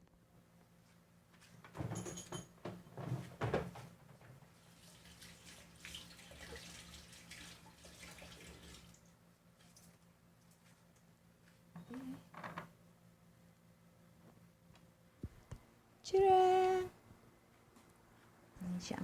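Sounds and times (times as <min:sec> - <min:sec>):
liquid running: 0:04.6 - 0:10.0.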